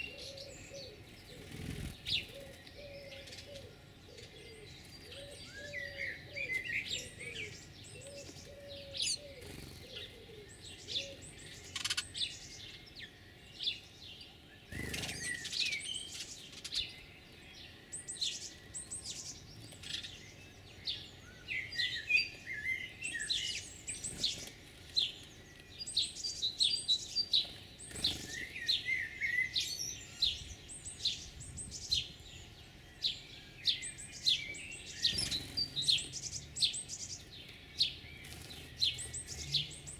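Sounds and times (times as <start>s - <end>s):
dove cooing: 0.0s - 1.5s, 2.1s - 11.3s
small birds chirping: 0.0s - 39.9s.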